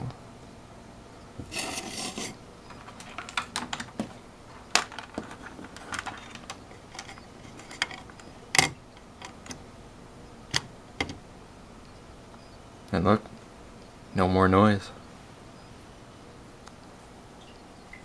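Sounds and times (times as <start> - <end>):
small hard objects clicking: 2.7 - 9.6.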